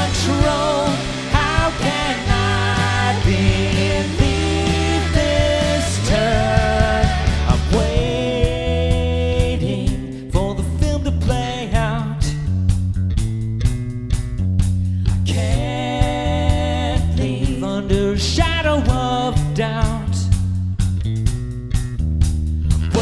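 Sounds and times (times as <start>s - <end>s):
rock band playing live: 0.0s - 8.7s.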